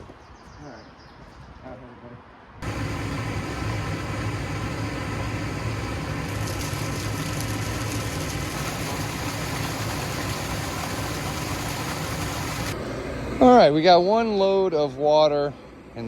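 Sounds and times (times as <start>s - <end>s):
water hissing: 2.6s - 12.8s
diesel engine running: 2.6s - 13.8s.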